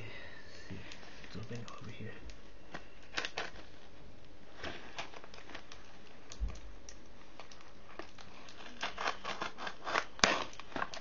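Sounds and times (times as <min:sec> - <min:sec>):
packaging clicks and crinkles: 0:00.8 - 0:11.0.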